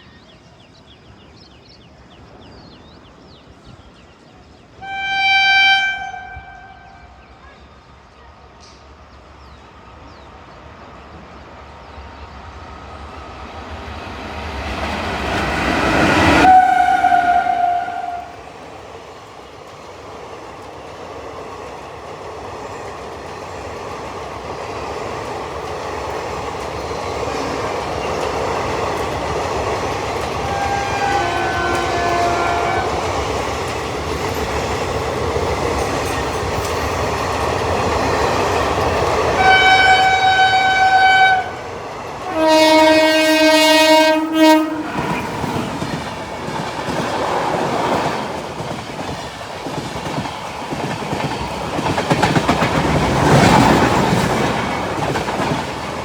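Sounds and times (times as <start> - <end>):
train approaching: 0.0 - 56.0
train rushing past: 1.8 - 56.0
train horn: 4.8 - 7.6, 15.8 - 18.6, 30.4 - 33.2, 39.3 - 45.7.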